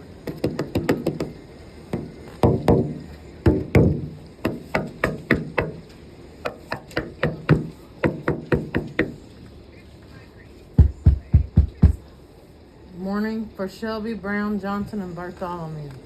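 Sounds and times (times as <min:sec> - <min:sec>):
sharp knocks and taps: 0:00.2 - 0:09.3, 0:10.8 - 0:12.0.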